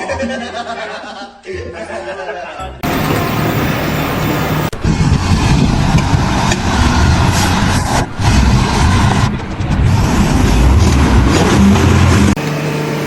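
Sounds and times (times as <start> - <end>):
heavy engine running loudly: 2.8 - 13.0.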